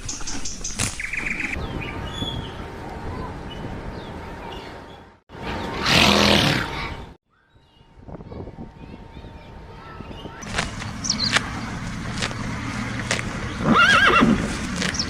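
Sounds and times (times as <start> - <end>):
outdoor background noise: 0.0 - 15.0
small birds chirping: 0.0 - 15.0.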